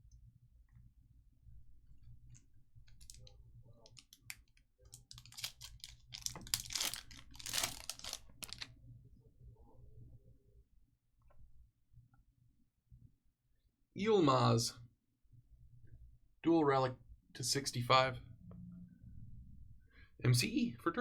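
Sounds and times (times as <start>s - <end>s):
foil wrapper crinkling: 2.9s - 3.3s, 3.9s - 8.7s.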